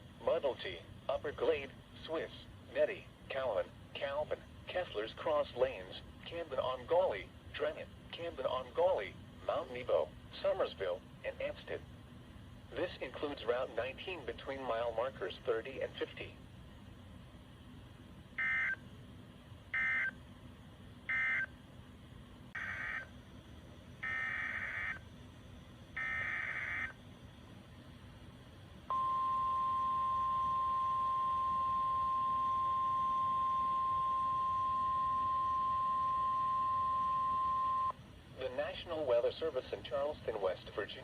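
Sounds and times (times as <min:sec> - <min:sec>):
steady warning alarm tone: 0:18.4 - 0:18.9, 0:19.7 - 0:20.2, 0:21.0 - 0:21.6, 0:22.5 - 0:27.6, 0:28.8 - 0:38.0.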